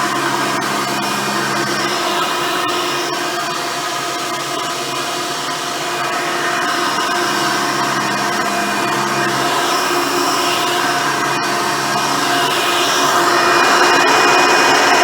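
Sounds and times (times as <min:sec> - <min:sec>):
vacuum cleaner motor hum: 0:06.0 - 0:15.0.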